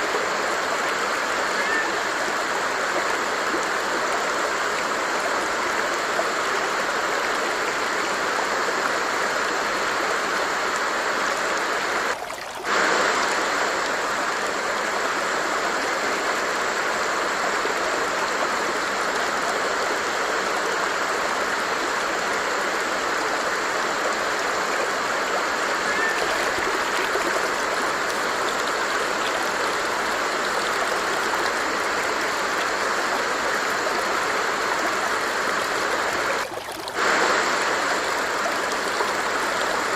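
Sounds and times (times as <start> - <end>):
water stream flowing: 0.0 - 39.9.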